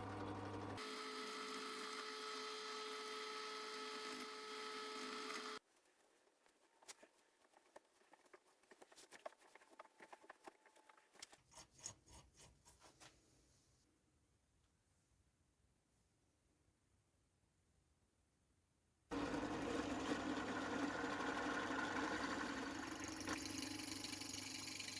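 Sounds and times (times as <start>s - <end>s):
power tool whine: 0.0s - 5.6s, 19.1s - 24.9s.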